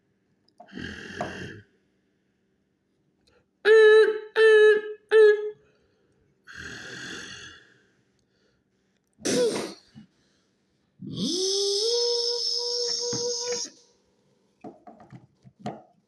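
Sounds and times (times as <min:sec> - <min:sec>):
person making short vocal sounds: 0:09.2 - 0:09.9, 0:11.0 - 0:13.8.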